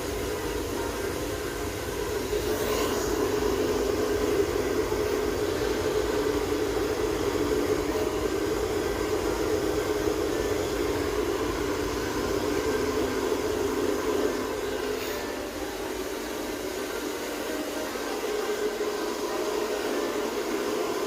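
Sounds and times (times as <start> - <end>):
hair dryer blowing: 0.0 - 21.0.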